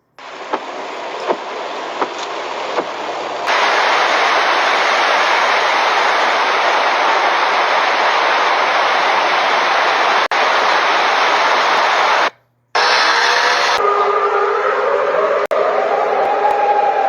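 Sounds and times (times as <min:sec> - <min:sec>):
heavy rain pouring: 0:00.2 - 0:12.3.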